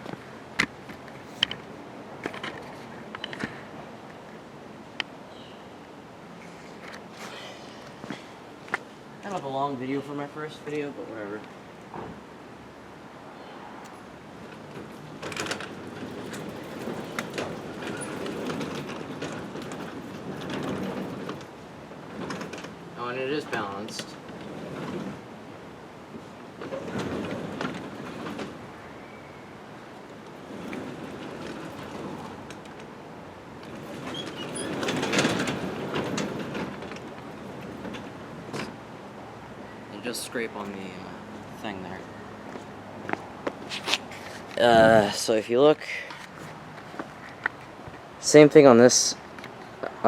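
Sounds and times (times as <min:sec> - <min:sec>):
garage door rollers rumbling: 0:14.3 - 0:25.4, 0:26.5 - 0:28.8, 0:30.1 - 0:38.9
garage door squeaks: 0:33.8 - 0:35.6.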